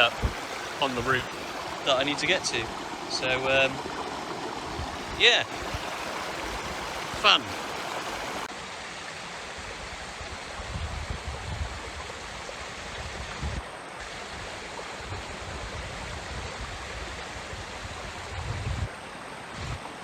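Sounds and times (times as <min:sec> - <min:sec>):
wind rumble on microphone: 0:00.0 - 0:00.5, 0:10.2 - 0:13.6, 0:15.0 - 0:19.0
waterfall rushing: 0:00.0 - 0:08.5.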